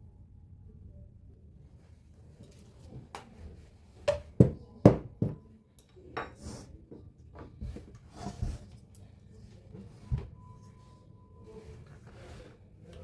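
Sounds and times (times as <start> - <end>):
objects knocking on workbench: 4.1 - 5.4.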